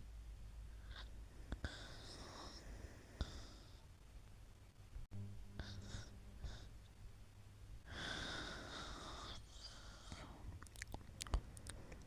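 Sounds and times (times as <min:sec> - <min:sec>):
person breathing while asleep: 0:00.7 - 0:03.9, 0:05.6 - 0:06.8, 0:07.8 - 0:10.5
soft mouth clicks: 0:10.1 - 0:12.0.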